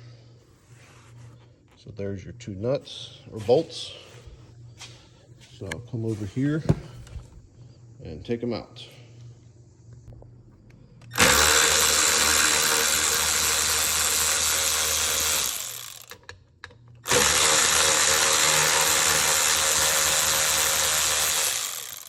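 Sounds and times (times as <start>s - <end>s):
power drill running: 11.0s - 16.2s, 17.0s - 22.0s.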